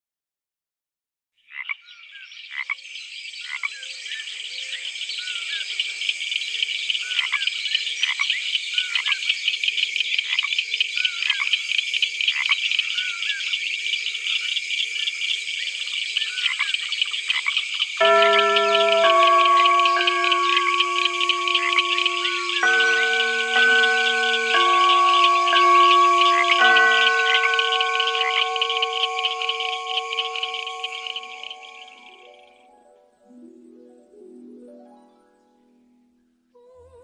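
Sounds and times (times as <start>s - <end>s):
chorus of pulsing frog chirps: 3.4s - 32.6s
falling whistled calls: 16.1s - 32.6s
music with sustained tones: 18.0s - 36.5s.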